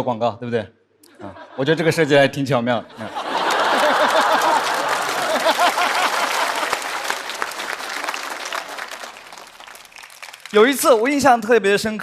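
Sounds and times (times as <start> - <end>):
audience laughing: 1.1 - 9.2
audience applauding: 3.1 - 11.2.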